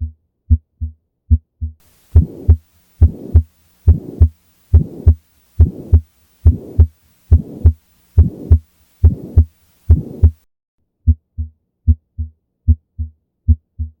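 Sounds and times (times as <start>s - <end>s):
heartbeat lub-dub: 0.0s - 10.4s, 11.0s - 14.0s
noisy heart murmur: 0.5s - 10.4s.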